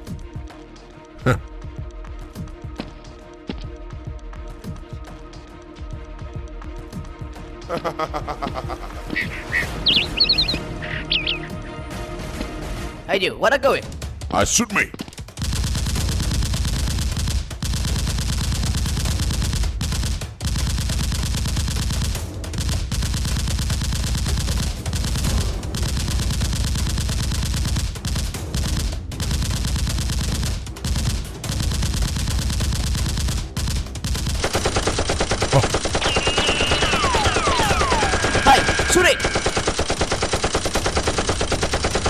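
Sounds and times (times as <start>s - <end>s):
rapid automatic gunfire: 15.3s - 42.0s.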